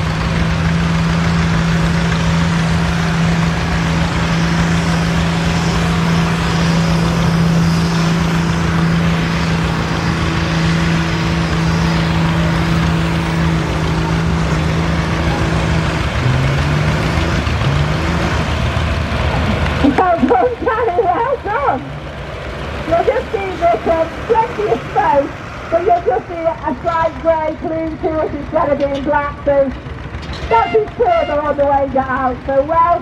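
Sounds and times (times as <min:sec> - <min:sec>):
tractor diesel engine revving: 0:00.0 - 0:33.0
commentator speaking: 0:19.4 - 0:22.0, 0:22.8 - 0:29.8, 0:30.5 - 0:33.0.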